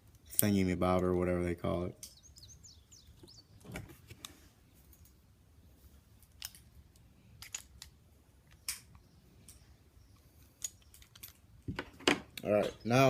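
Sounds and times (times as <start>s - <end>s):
metallic clicks of pistol parts: 2.0s - 2.2s, 6.2s - 11.5s.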